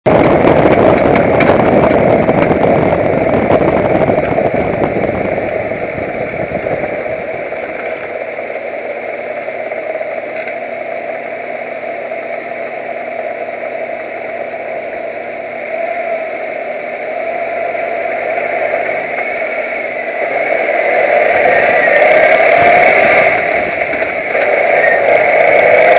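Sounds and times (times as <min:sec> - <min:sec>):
truck engine running: 0:00.1 - 0:25.9.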